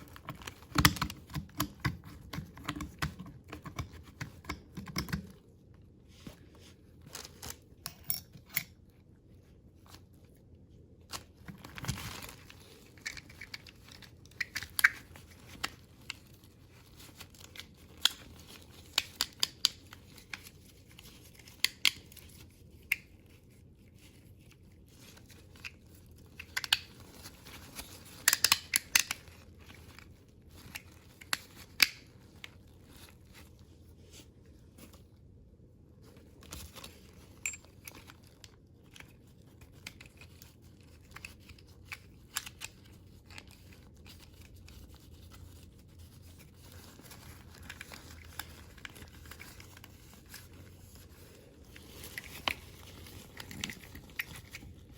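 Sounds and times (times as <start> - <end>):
small parts clicking and tapping: 0.0 - 5.5, 11.1 - 23.2, 25.0 - 32.6.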